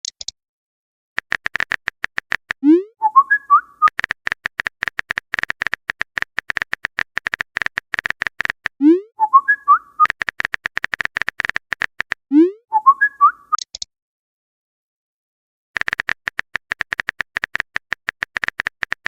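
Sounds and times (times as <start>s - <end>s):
phone keyboard typing clicks: 1.2s - 2.6s, 3.8s - 8.8s, 10.0s - 12.3s, 15.8s - 19.0s
whistled notification chirp: 2.7s - 3.9s, 9.0s - 10.1s, 12.4s - 13.6s.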